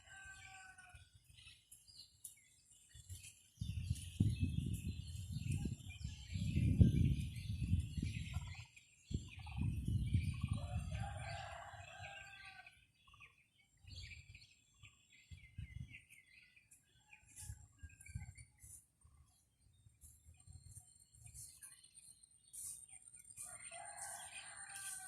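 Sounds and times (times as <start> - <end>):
small birds chirping: 0.0 - 25.0
wind buffeting microphone: 2.9 - 12.4, 13.9 - 16.2, 17.4 - 18.8.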